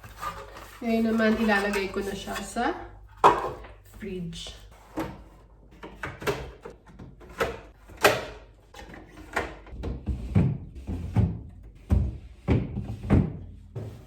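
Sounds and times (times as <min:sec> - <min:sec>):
fridge shelves knocking and clunking: 0:04.8 - 0:14.0.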